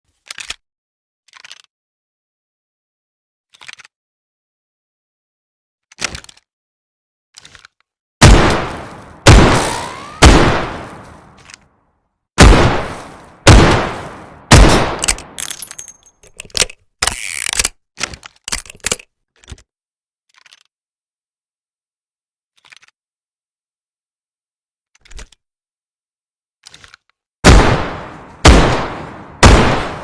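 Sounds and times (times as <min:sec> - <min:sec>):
metallic clicks of gun mechanism: 0:01.3 - 0:01.7, 0:15.0 - 0:19.6
revolver shots: 0:08.3 - 0:11.3.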